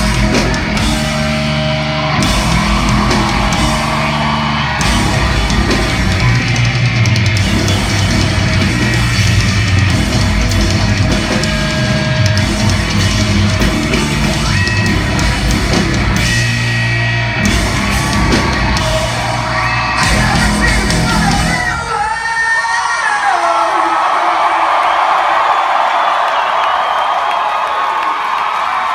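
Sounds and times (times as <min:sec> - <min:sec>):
distorted electric guitars: 0:00.0 - 0:22.2
pounding drum kit: 0:00.0 - 0:22.5.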